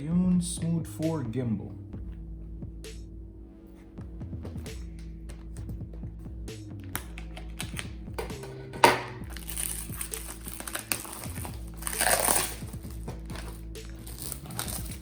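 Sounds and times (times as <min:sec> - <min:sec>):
instrumental background beat: 0:00.0 - 0:15.0
packaging clicks and taps: 0:06.8 - 0:15.0
packaging rustling: 0:07.0 - 0:15.0.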